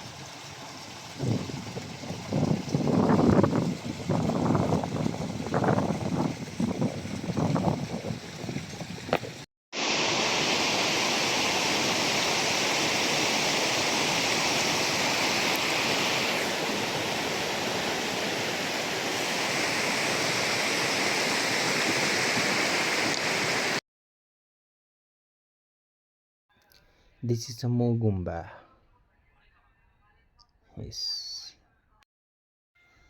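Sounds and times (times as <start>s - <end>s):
fast-flowing water rushing: 0.0s - 23.8s.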